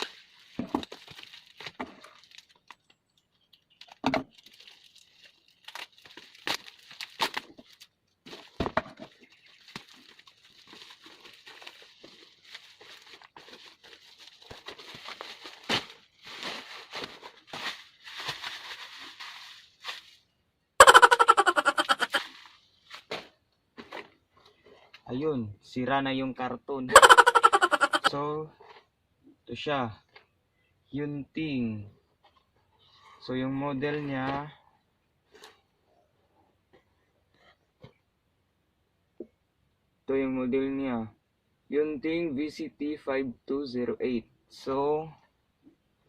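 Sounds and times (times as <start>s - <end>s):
packaging tearing and crinkling: 0.0s - 2.8s, 3.8s - 8.6s, 9.5s - 20.1s.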